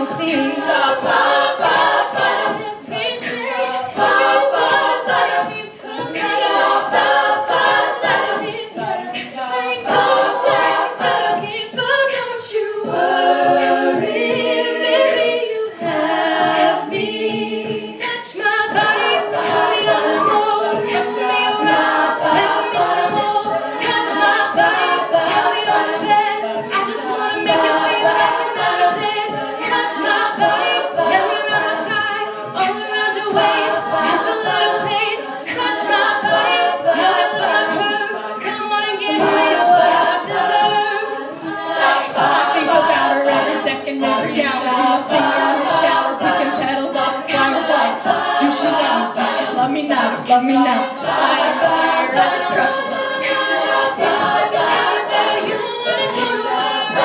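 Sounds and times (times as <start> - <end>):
vocal percussion beat: 0.0 - 57.0
women singing a cappella harmony: 0.0 - 57.0.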